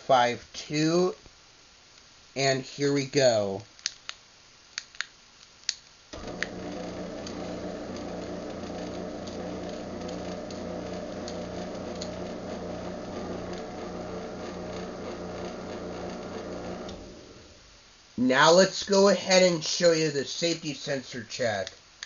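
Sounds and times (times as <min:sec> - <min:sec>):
garage door opener motor humming: 0:06.2 - 0:17.8.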